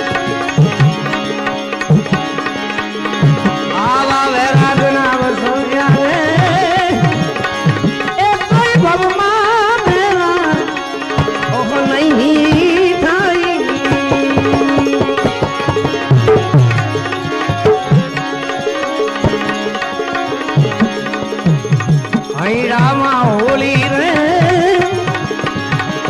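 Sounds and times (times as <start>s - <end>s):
tabla playing: 0.0s - 26.0s
wavering melodic line: 11.5s - 24.2s.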